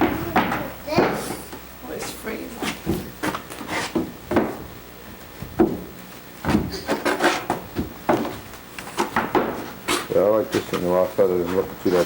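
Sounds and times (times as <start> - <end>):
knocks and thumps on bare wood: 2.7 - 4.7, 5.4 - 10.0.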